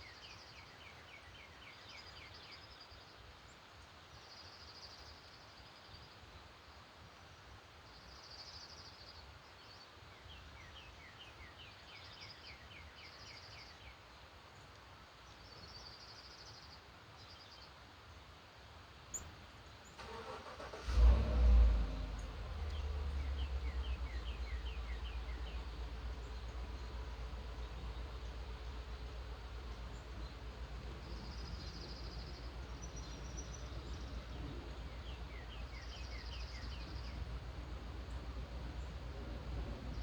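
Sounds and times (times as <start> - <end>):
songbirds chirping: 0.0 - 6.6, 7.3 - 40.0
car engine starting and idling: 19.2 - 40.0.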